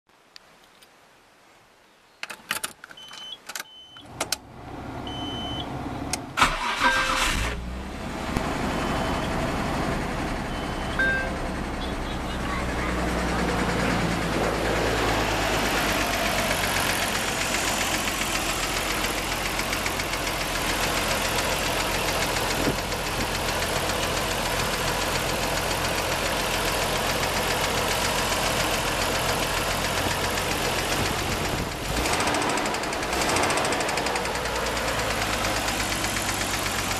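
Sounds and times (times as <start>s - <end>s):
engine ticking knock: 15.8s - 36.9s.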